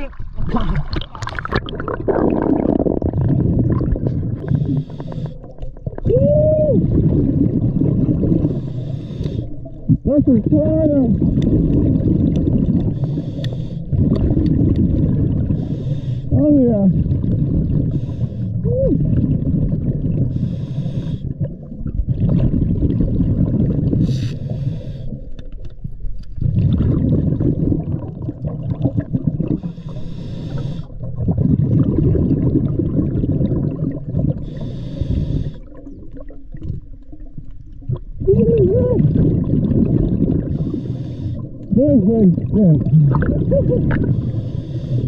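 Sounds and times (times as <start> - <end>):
bubbling rumble on exhale: 0.0 - 45.0
regulator hiss on inhale: 4.5 - 5.5, 8.4 - 9.6, 13.0 - 13.9, 15.6 - 16.3, 17.8 - 18.5, 20.3 - 21.4, 24.0 - 25.4, 29.6 - 31.0, 34.4 - 35.8, 40.5 - 41.5, 44.1 - 45.0.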